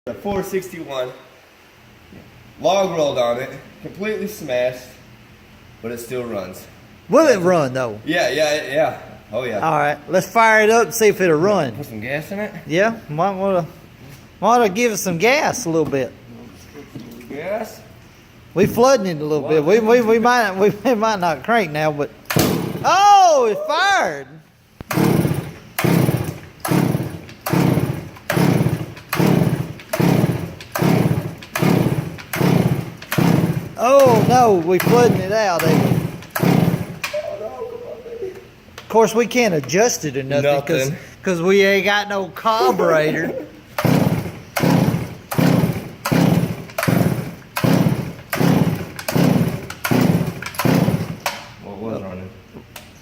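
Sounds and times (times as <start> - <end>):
chainsaw revving: 22.4 - 22.9, 24.9 - 37.1, 43.8 - 51.3.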